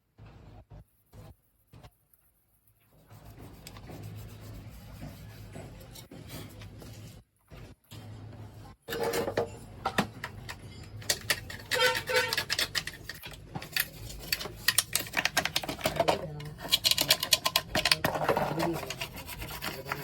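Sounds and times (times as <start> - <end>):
clicking and scraping on plastic: 10.5 - 20.0.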